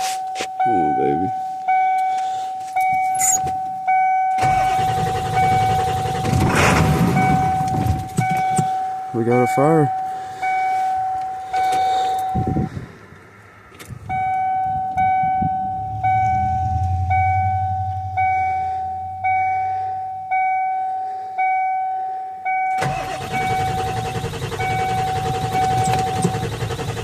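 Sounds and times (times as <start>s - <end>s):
steady mechanical noise: 4.4s - 8.8s, 22.8s - 27.0s
warning chime dinging: 7.2s - 12.7s, 14.1s - 27.0s
low rumble: 12.2s - 20.6s.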